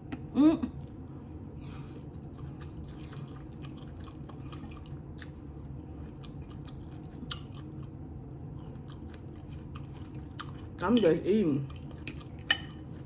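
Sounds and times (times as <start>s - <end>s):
low background hum: 0.0s - 13.0s
person chewing: 1.7s - 10.9s.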